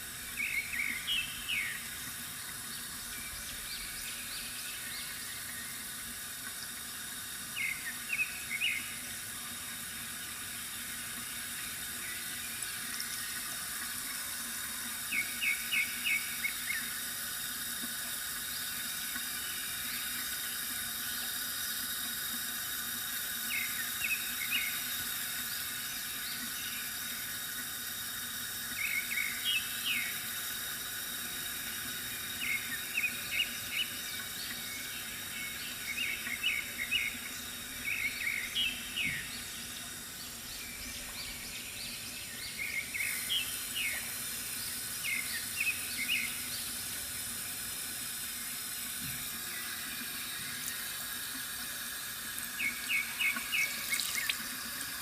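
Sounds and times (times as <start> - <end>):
water trickling from fountain: 0.0 - 55.0.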